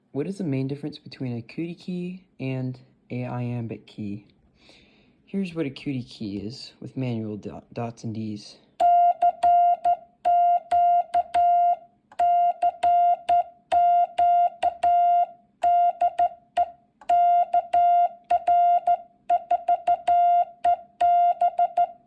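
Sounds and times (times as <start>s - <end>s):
morse code beeps: 8.8s - 22.0s.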